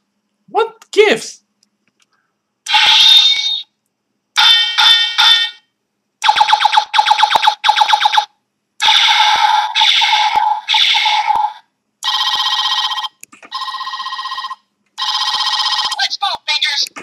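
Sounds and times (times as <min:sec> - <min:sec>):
trilling telephone-style ringing: 0:12.0 - 0:16.1.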